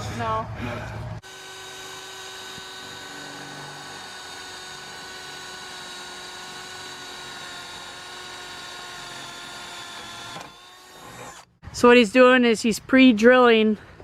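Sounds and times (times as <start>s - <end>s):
electric drill drilling steel: 1.2s - 11.6s.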